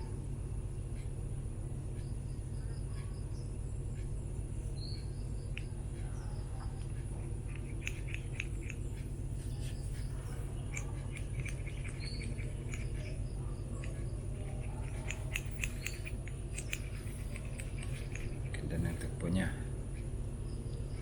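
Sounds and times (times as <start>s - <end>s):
birds chirping: 2.1s - 21.0s.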